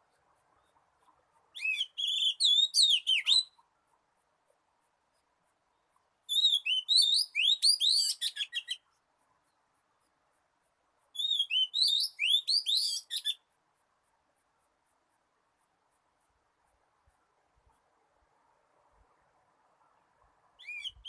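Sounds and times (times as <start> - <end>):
bird singing whistles and chirps: 1.5 - 3.6, 6.3 - 8.8, 11.1 - 13.4, 20.6 - 21.0.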